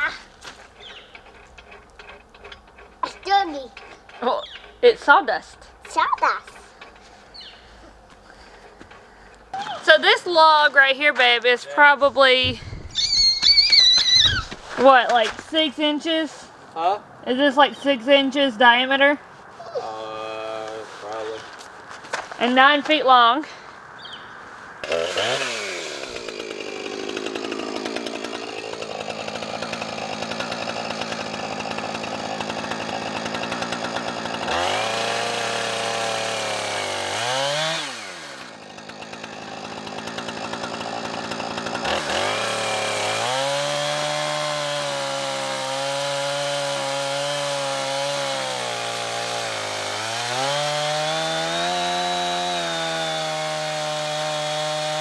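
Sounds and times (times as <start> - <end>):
chainsaw ripping a log: 0.0 - 5.0, 12.4 - 15.7, 24.8 - 55.0.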